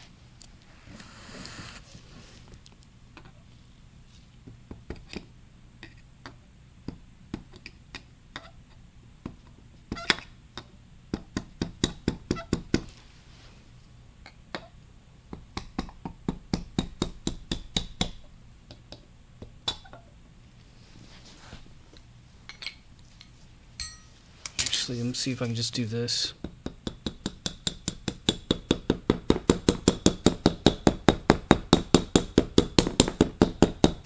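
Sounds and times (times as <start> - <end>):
hammer tapping on metal: 23.8 - 24.2, 26.4 - 34.0.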